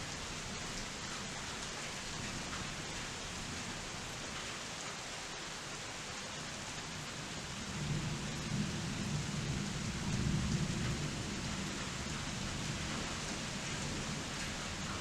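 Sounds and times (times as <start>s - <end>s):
steady rain: 0.0s - 15.0s
rolling rumble of thunder: 7.6s - 15.0s.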